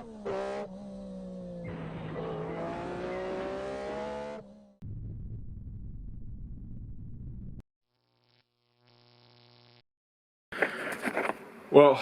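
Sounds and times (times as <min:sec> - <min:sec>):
car engine revving: 0:00.0 - 0:04.8.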